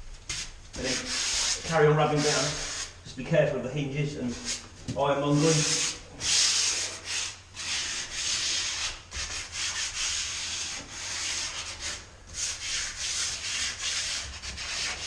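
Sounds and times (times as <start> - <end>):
sandpaper sanding wood: 0.4 - 3.0, 5.3 - 15.0.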